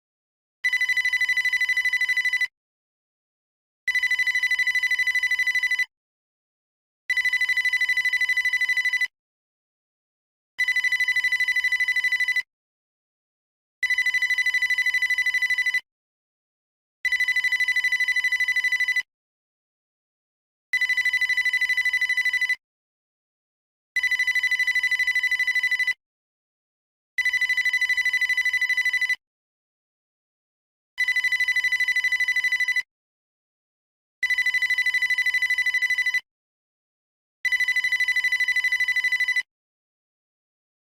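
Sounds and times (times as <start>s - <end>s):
electronic telephone ringing: 0.7s - 2.5s, 3.9s - 5.9s, 7.1s - 9.1s, 10.6s - 12.5s, 13.8s - 15.8s, 17.1s - 19.1s, 20.8s - 22.6s, 24.0s - 26.0s, 27.2s - 29.2s, 31.0s - 32.9s, 34.2s - 36.2s, 37.5s - 39.5s.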